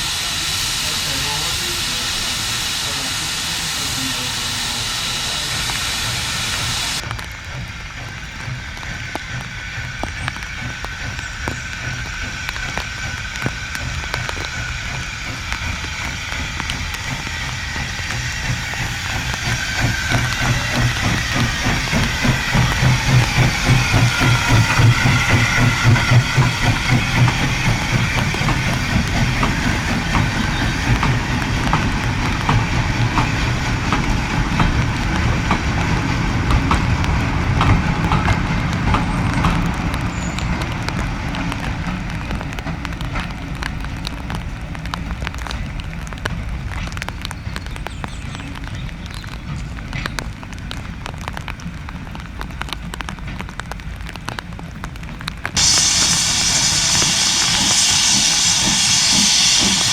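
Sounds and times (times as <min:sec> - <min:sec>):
train running past: 0:00.0 - 0:59.9
rapid pulsing beat: 0:07.6 - 0:41.5, 0:55.6 - 0:59.9.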